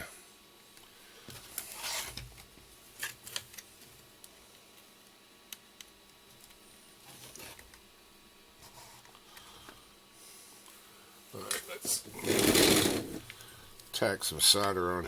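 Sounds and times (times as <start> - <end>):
tools scraping: 12.2 - 13.2.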